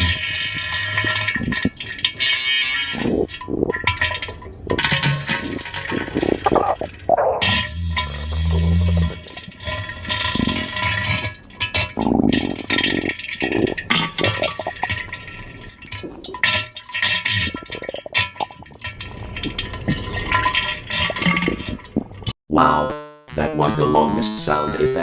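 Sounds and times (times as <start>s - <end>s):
wet splattering and splashing: 11.8s - 22.3s.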